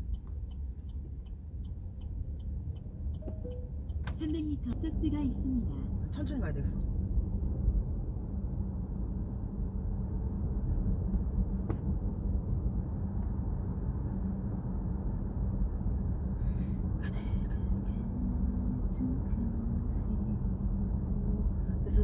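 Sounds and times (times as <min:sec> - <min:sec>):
car cabin rumble: 0:00.0 - 0:08.3, 0:10.3 - 0:13.7.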